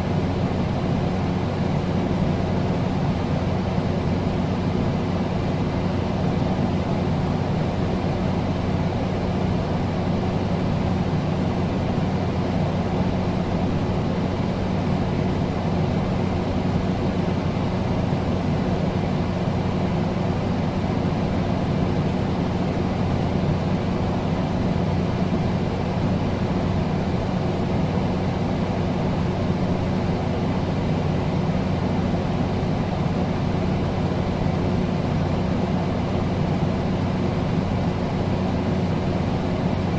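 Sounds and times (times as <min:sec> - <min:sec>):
air conditioner rushing air: 0:00.0 - 0:39.9
low constant hum: 0:00.0 - 0:39.9.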